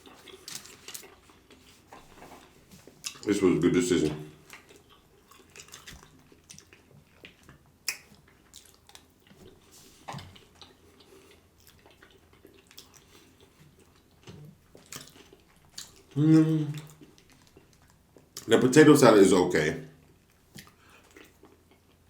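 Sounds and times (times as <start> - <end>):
person chewing food: 0.0 - 3.3, 4.3 - 18.5, 20.0 - 22.0.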